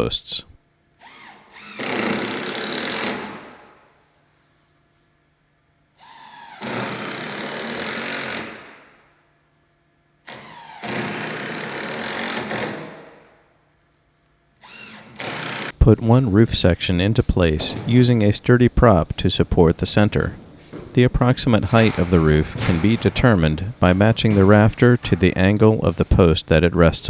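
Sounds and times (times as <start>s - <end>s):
power drill driving screws: 1.0s - 3.4s, 10.3s - 12.8s, 14.6s - 15.7s.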